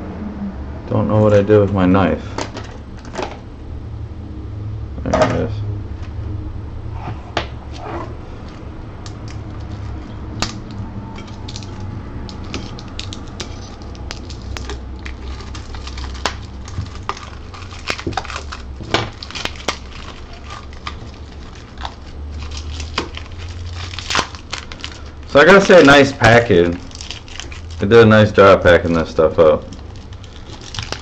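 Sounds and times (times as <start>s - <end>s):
steady low hum: 0.0s - 31.0s
packaging crackling and clicking: 8.4s - 31.0s.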